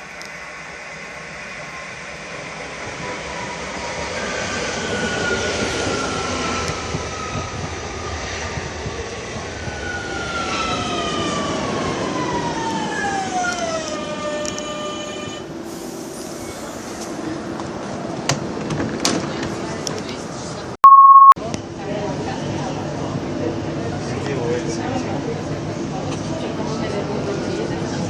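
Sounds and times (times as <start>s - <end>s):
train rumble and hiss: 0.0s - 20.7s.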